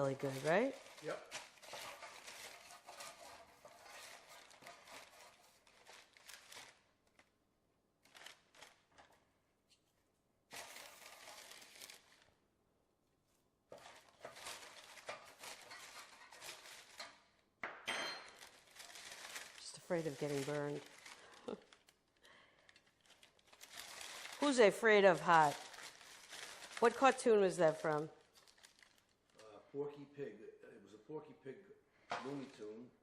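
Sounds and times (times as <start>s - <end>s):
parchment paper crinkling: 0.0s - 7.4s, 8.0s - 9.9s, 10.5s - 12.4s, 13.7s - 17.3s, 18.2s - 29.4s.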